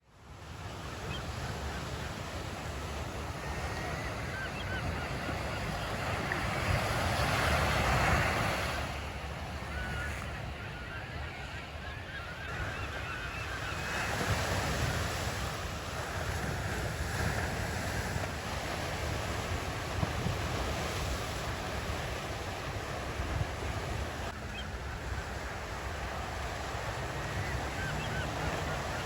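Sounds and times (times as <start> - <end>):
surf breaking on a beach: 0.1 - 29.0
wind rumbling on microphone: 12.8 - 29.0.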